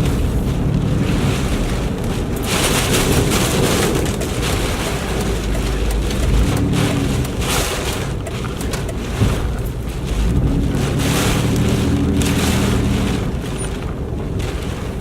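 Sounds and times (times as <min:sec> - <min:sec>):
wind-driven rain hiss: 0:00.0 - 0:15.0.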